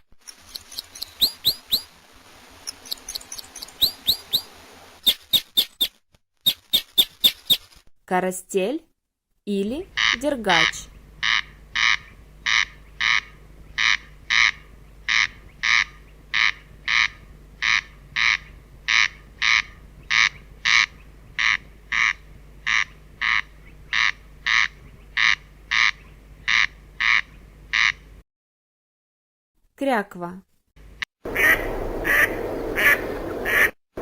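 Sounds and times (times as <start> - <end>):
corncrake rasping call: 0.4 - 1.9, 2.7 - 7.7, 9.9 - 28.0, 31.3 - 33.7.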